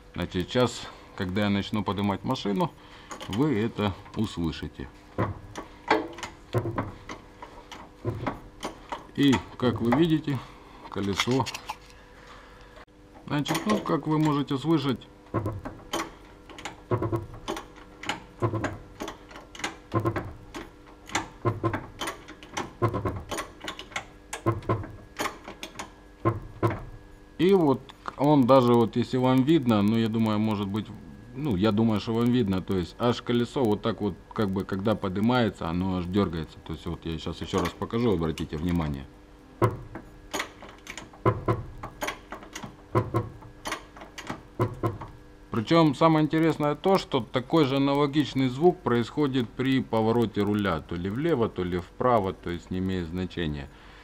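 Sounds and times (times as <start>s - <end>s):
shock absorber knocking: 5.1s - 7.2s, 8.0s - 8.5s, 15.3s - 15.8s, 16.9s - 17.6s, 18.4s - 18.9s, 19.8s - 20.5s, 21.2s - 23.4s, 24.4s - 25.0s, 26.2s - 27.0s, 44.6s - 45.1s.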